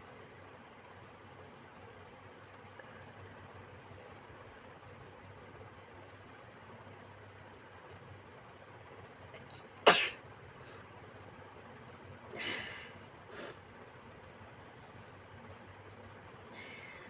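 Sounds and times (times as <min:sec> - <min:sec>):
quiet breathy noises: 0:01.8 - 0:04.5, 0:10.5 - 0:11.1, 0:12.2 - 0:17.0.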